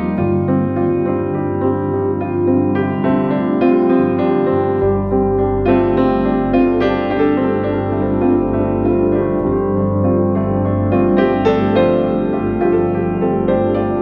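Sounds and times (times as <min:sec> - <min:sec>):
slow calm piano music: 0:00.0 - 0:14.0.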